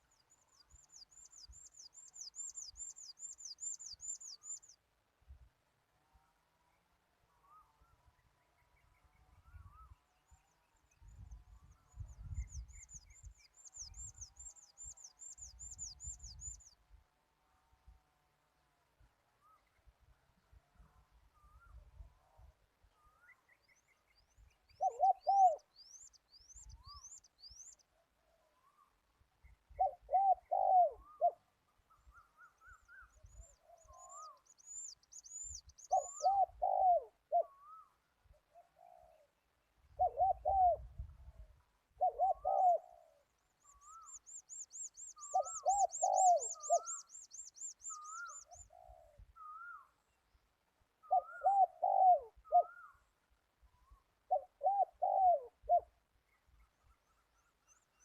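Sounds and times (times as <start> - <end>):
small birds chirping: 0.0 - 4.8, 8.4 - 16.8, 23.0 - 28.0, 28.6 - 39.3, 42.0 - 50.4
dove cooing: 24.8 - 25.7, 29.8 - 31.4, 35.9 - 37.8, 40.0 - 41.0, 42.0 - 43.2, 45.1 - 47.0, 51.1 - 52.9, 54.3 - 55.9.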